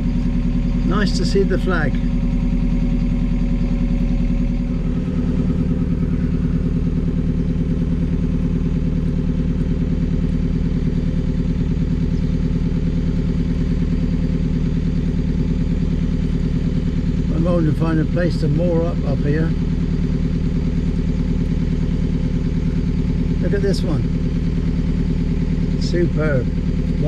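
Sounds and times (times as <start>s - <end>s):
boat diesel engine throbbing: 0.0s - 27.0s.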